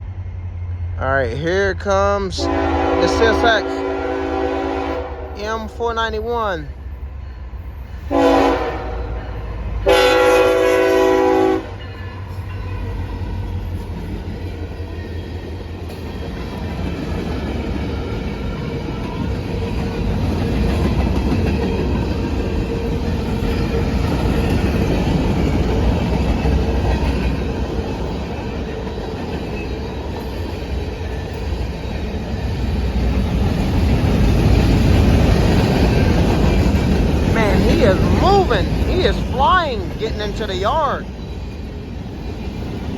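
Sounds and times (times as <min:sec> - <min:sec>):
freight train passing: 0:00.0 - 0:42.9
locomotive air horn blast: 0:02.4 - 0:05.4, 0:08.1 - 0:09.2, 0:09.8 - 0:11.8.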